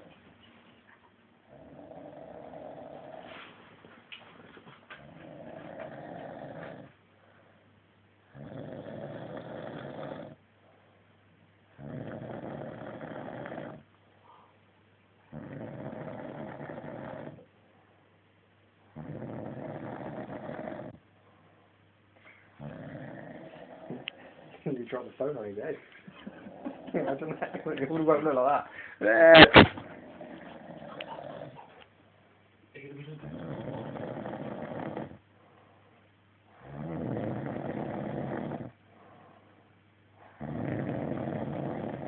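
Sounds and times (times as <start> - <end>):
man snoring heavily: 1.5 - 3.2, 5.5 - 6.8, 8.3 - 10.4, 11.8 - 13.8, 15.3 - 17.4, 19.0 - 21.0, 22.6 - 23.8, 33.2 - 35.2, 36.6 - 38.8, 40.4 - 42.0
quiet breathing: 5.0 - 18.3, 18.9 - 26.9, 28.6 - 29.0, 29.9 - 42.0.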